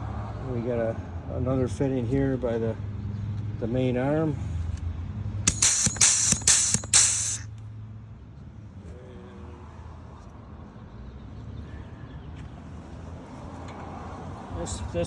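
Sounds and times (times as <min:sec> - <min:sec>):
grease gun hissing spurts: 0:05.5 - 0:07.4
steady low hum: 0:05.5 - 0:07.4.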